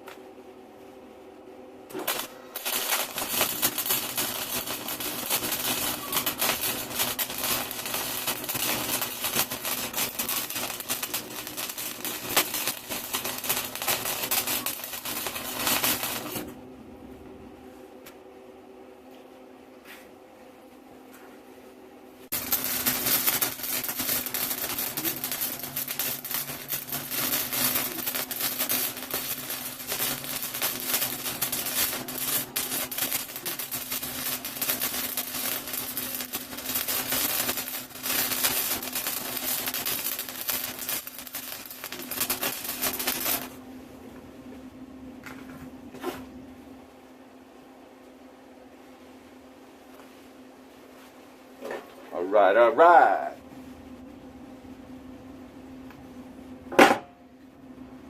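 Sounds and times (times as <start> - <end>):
steady low hum: 0.0 - 58.0
welder crackling: 1.9 - 16.6, 22.3 - 43.6.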